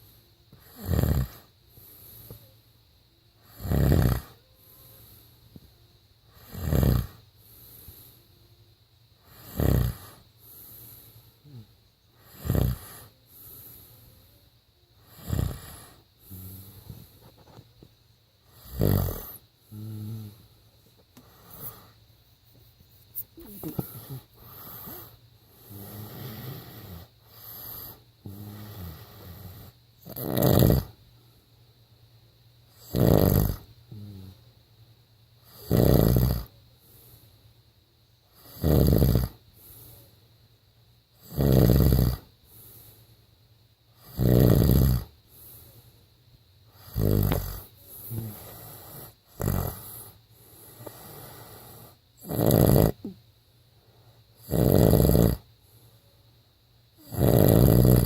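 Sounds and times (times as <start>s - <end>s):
man snoring: 0.6s - 1.5s, 3.4s - 4.5s, 6.3s - 7.3s, 9.2s - 10.2s, 11.4s - 13.2s, 15.0s - 17.0s, 18.5s - 20.4s, 23.4s - 31.0s, 32.8s - 34.4s, 35.5s - 36.5s, 38.4s - 39.4s, 41.2s - 42.3s, 44.0s - 45.2s, 46.8s - 53.2s, 54.4s - 55.5s, 57.0s - 58.0s
soft breathing: 1.4s - 2.7s, 4.2s - 29.8s, 39.4s - 40.4s, 42.3s - 44.1s, 45.2s - 52.2s, 52.9s - 54.5s, 55.4s - 56.3s.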